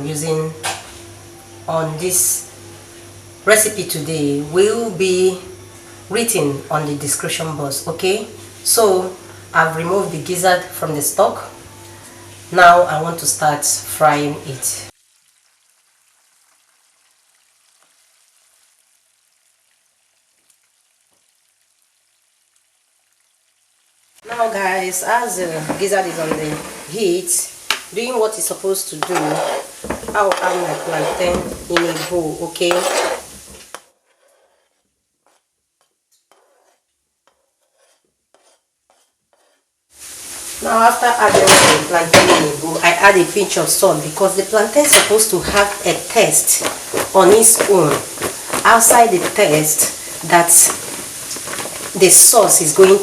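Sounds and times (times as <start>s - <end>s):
oil sizzling and crackling: 14.9s - 38.3s, 39.9s - 53.0s.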